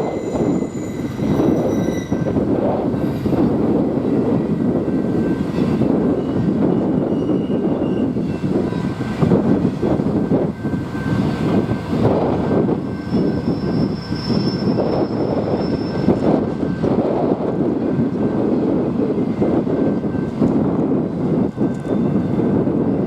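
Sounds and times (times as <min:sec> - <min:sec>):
train rumbling past: 0:00.0 - 0:23.0
thin high squeal: 0:00.1 - 0:02.4, 0:13.0 - 0:16.2.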